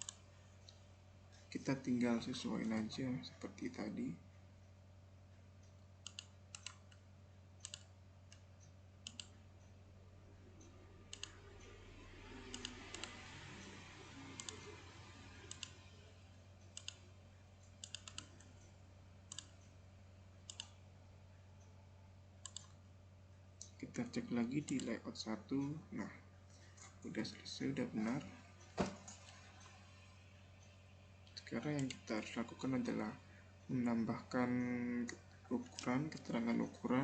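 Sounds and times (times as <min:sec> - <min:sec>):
computer mouse clicks: 0:00.0 - 0:00.8, 0:05.6 - 0:07.0, 0:07.6 - 0:09.4, 0:10.6 - 0:11.8, 0:12.4 - 0:15.8, 0:16.6 - 0:18.7, 0:19.3 - 0:19.7, 0:20.4 - 0:20.8, 0:22.4 - 0:22.8, 0:31.3 - 0:32.1
faint low hum: 0:00.0 - 0:37.0.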